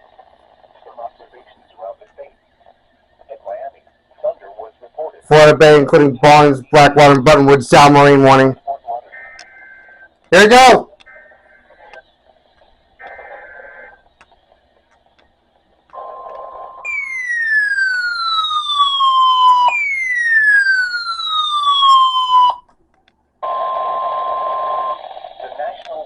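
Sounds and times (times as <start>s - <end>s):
falling siren sweeps: 16.8s - 22.6s.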